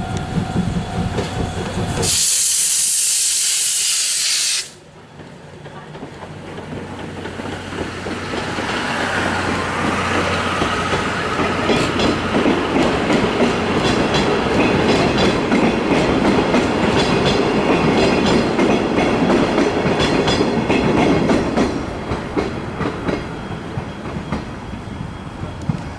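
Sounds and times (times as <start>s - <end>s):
steam train rumbling past: 0.0s - 25.9s
wheels clicking over rail joints: 5.0s - 24.6s.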